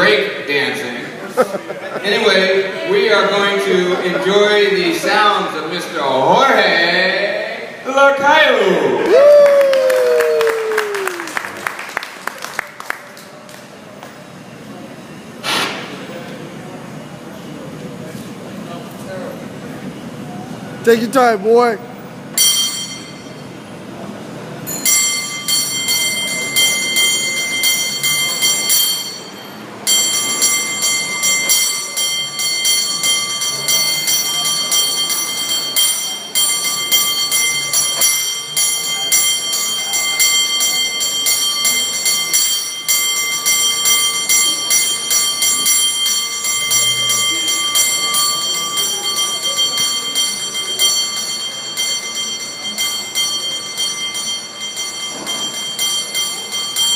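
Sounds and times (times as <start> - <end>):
cable car bell ringing: 22.3 - 56.9.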